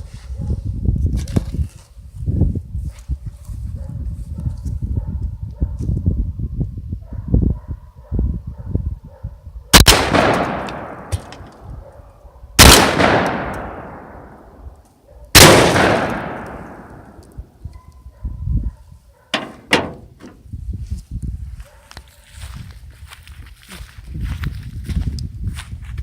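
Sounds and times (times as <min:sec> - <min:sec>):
shotgun blasts: 0:09.8 - 0:11.6, 0:12.6 - 0:14.6, 0:15.4 - 0:17.3.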